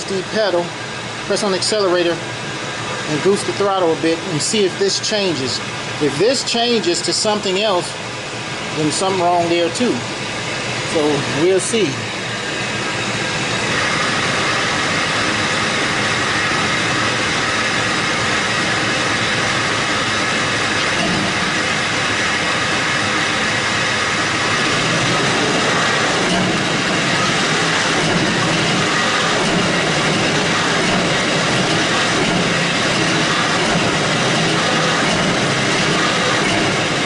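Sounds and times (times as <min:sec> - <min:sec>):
truck engine rumbling: 0:00.0 - 0:37.0.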